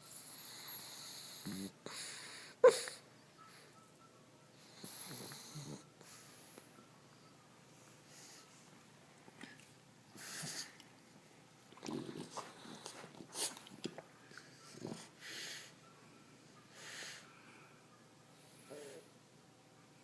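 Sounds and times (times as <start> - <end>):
pet snoring: 0.0 - 2.3, 4.6 - 6.4, 11.8 - 12.9, 14.5 - 15.7
snorts and snuffles: 11.8 - 13.8.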